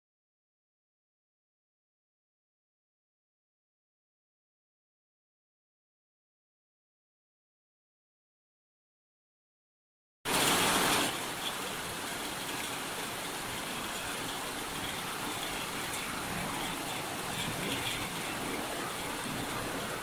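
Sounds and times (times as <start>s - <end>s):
heavy rain: 10.3s - 20.0s.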